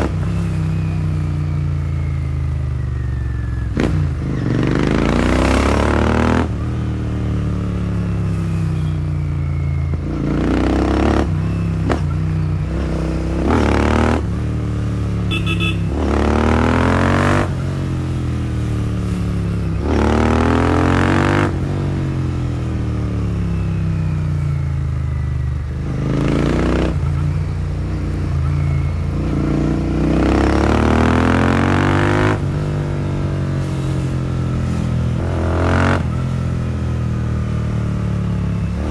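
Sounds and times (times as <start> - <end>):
motorcycle engine accelerating: 0.0 - 38.9.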